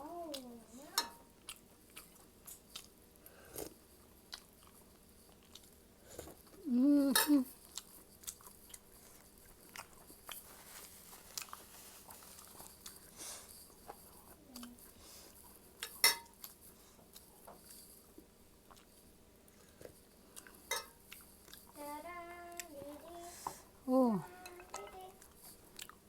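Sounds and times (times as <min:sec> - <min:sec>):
cutlery clicking against a dish: 0:01.0 - 0:01.2, 0:15.8 - 0:16.3, 0:20.7 - 0:21.0
chewing and biting: 0:01.4 - 0:03.0, 0:03.6 - 0:06.6, 0:07.6 - 0:14.8, 0:18.6 - 0:21.8, 0:24.7 - 0:26.0.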